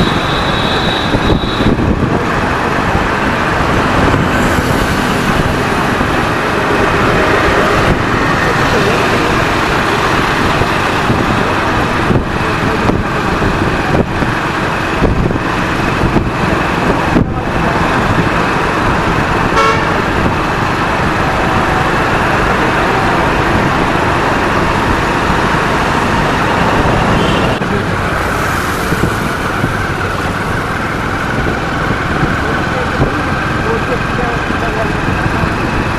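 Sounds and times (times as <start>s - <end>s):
vehicle horn tooting: 0.0s - 1.8s, 19.6s - 20.1s, 27.1s - 27.6s
road traffic noise: 0.0s - 35.9s.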